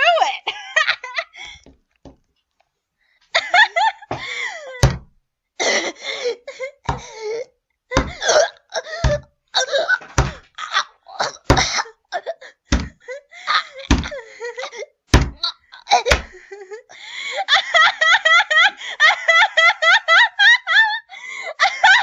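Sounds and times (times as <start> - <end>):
girl crying out in pain: 5.6 - 17.5
heavy thuds: 7.9 - 8.4, 9.0 - 9.3, 12.7 - 13.0.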